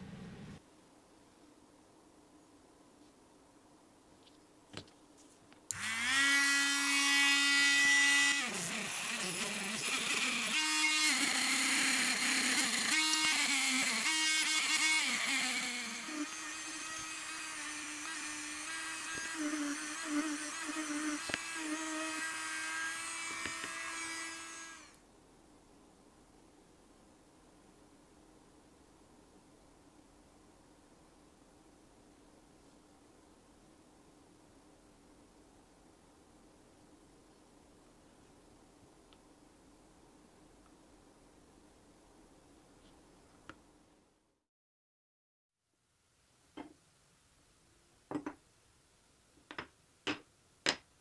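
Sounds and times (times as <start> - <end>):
power tool motor whining: 5.7 - 25.0.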